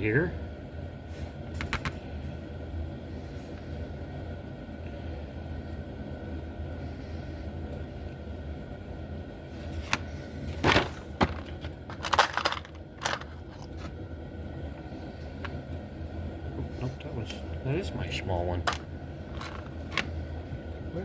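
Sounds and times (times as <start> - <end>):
steady low hum: 0.0 - 21.0
hand tools clattering: 10.6 - 13.6.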